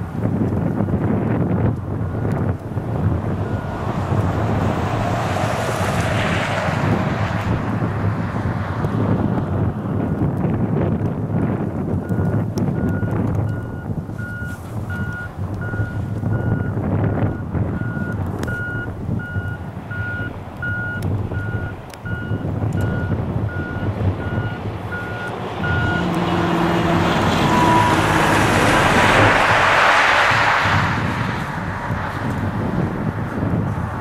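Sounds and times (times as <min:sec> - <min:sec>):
low wind rumble: 0:00.0 - 0:34.0
level-crossing warning bell beeping: 0:17.8 - 0:26.1, 0:27.5 - 0:28.2
freight train approaching: 0:24.2 - 0:30.8.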